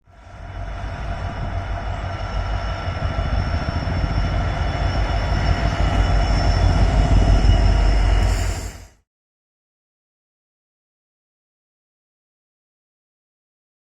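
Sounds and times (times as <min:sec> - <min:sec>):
train rumbling past: 0:00.0 - 0:09.0.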